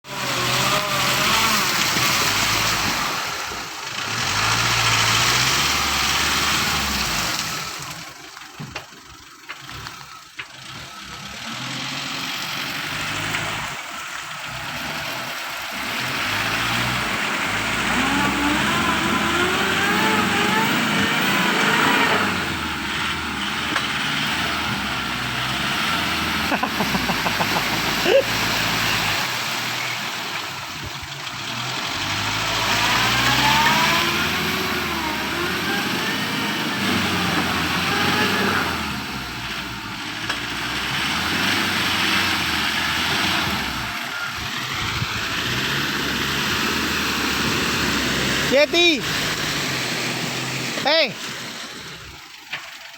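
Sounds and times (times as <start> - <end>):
vehicle engine revving: 0.0 - 8.2, 9.0 - 52.9.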